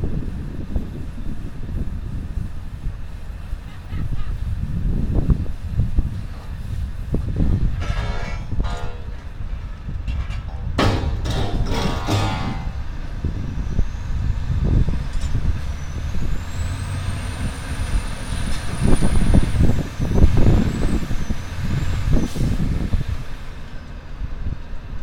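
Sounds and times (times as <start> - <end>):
heavy machinery rumble: 0.0 - 24.9
sharp metallic knocks: 7.8 - 9.5, 10.1 - 13.0.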